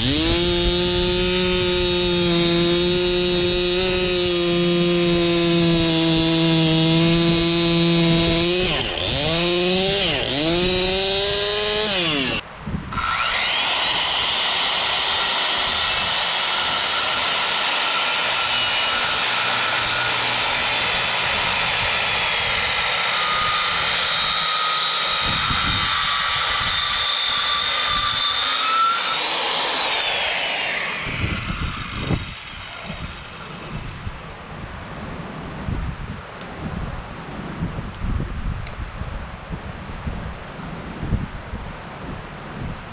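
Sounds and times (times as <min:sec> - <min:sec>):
chainsaw cutting wood: 0:00.0 - 0:34.2.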